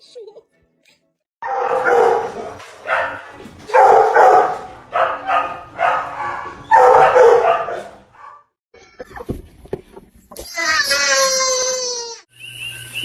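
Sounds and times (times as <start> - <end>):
dog barking: 1.4 - 8.5.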